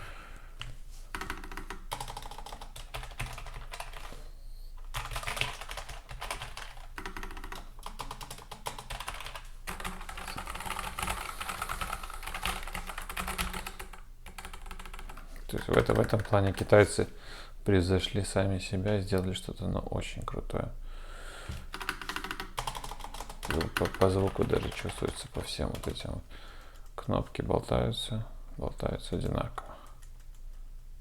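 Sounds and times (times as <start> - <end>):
fast typing on mechanical keyboards: 1.1 - 4.1, 4.9 - 16.8, 21.7 - 27.0.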